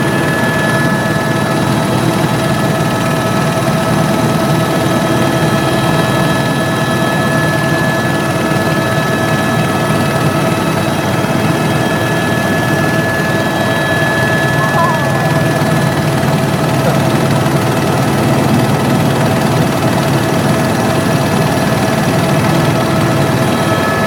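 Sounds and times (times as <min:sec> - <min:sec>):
helicopter running: 0:00.0 - 0:24.0.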